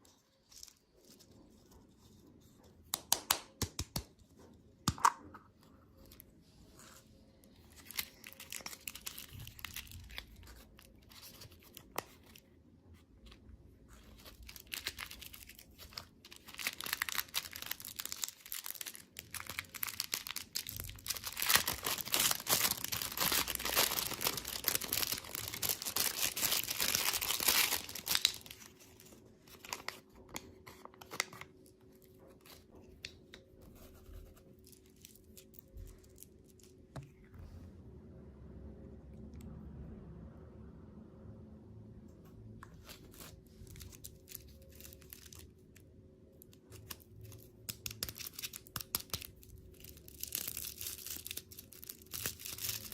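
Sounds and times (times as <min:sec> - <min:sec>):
packaging crinkling and tearing: 0:07.5 - 0:12.5, 0:13.2 - 0:36.9, 0:42.7 - 0:45.8, 0:46.4 - 0:52.9.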